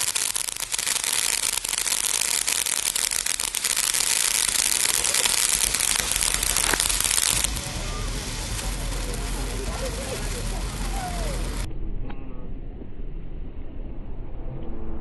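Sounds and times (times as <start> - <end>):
fireworks hissing and crackling: 0.0 - 11.7.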